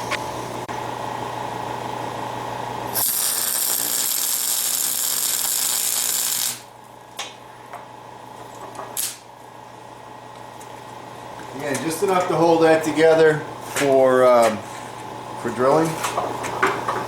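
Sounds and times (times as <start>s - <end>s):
welding arc hissing: 2.9s - 6.7s, 9.0s - 9.3s.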